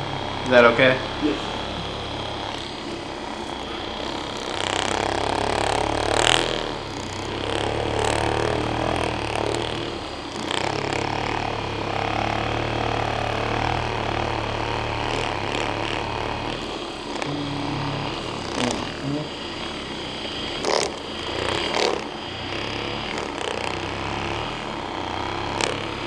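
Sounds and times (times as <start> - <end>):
electric massager buzzing: 0.0 - 26.0.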